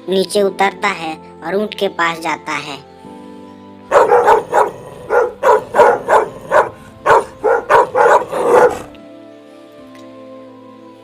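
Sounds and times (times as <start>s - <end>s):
faint background music: 0.0s - 11.0s
dog barking rapidly: 3.9s - 8.9s.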